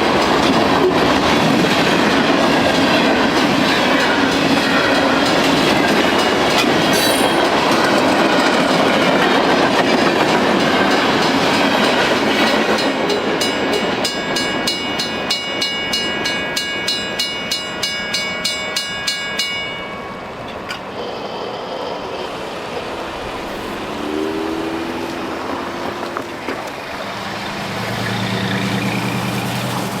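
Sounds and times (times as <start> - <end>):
freight train wheels clattering: 0.0 - 21.4, 22.7 - 30.0
crossing bell ringing: 2.8 - 8.0, 10.5 - 22.0.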